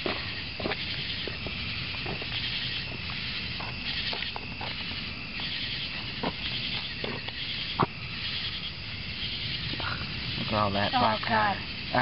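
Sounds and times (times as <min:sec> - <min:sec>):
night insects chirping: 0:00.0 - 0:12.0.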